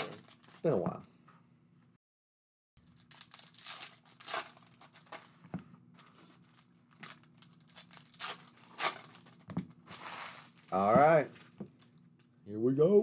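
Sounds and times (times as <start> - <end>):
card packaging crackling and tearing: 0.0 - 0.8, 2.8 - 5.4, 6.0 - 11.2.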